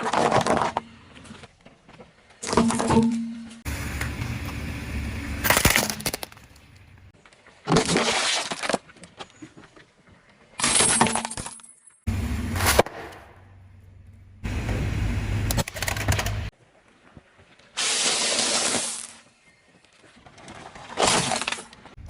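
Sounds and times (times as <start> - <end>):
objects cracking under car tyres: 5.4 - 9.6
low rumble of car: 12.1 - 16.5.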